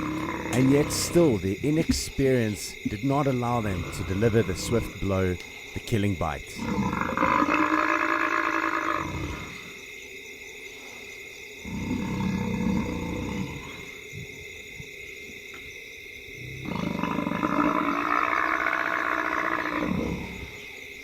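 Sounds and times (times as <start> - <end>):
lions growling: 0.0 - 5.4, 6.5 - 9.8, 11.6 - 14.4, 16.4 - 20.6.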